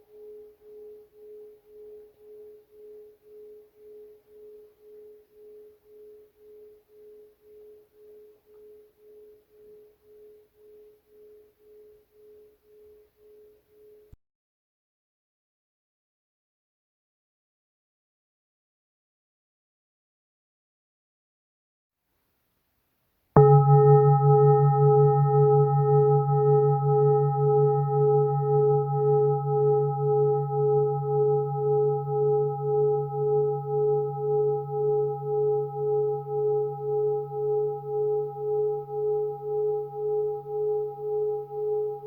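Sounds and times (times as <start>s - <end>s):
faint background hiss: 0.0s - 14.2s, 22.0s - 23.4s.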